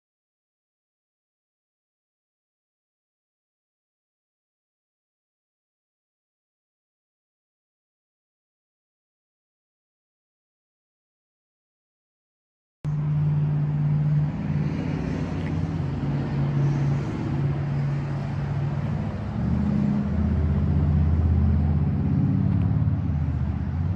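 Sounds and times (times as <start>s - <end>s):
engine humming: 12.9s - 23.9s.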